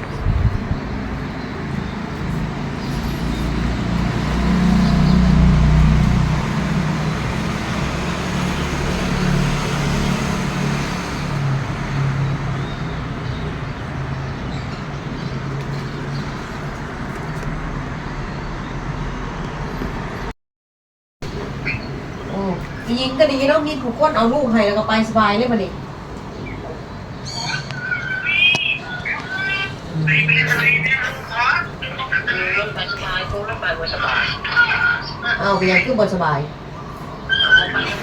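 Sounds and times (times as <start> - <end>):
vehicle engine hum with road noise: 0.0 - 20.3, 25.4 - 35.8.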